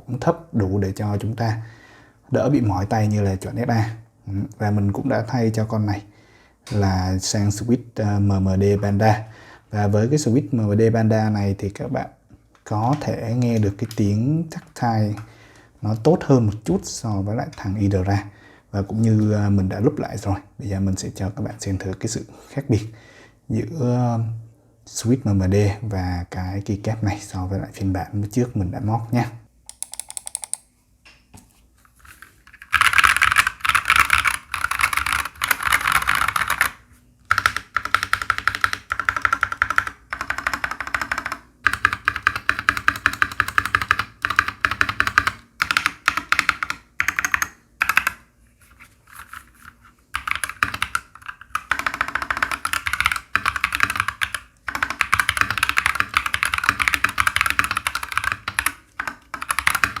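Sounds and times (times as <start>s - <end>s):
mechanical keyboard typing: 29.7s - 30.6s, 32.5s - 48.2s, 50.2s - 60.0s.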